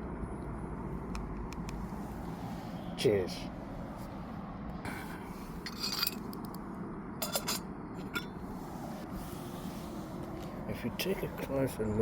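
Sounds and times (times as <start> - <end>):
metal cookware clinking: 7.2 - 8.4.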